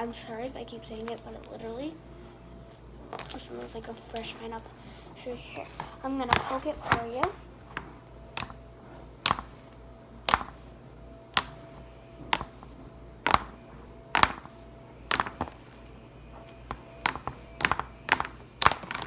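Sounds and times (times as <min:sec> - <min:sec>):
slime popping: 0:07.2 - 0:08.6, 0:09.2 - 0:09.6, 0:10.2 - 0:10.6, 0:12.3 - 0:15.8, 0:16.6 - 0:19.0.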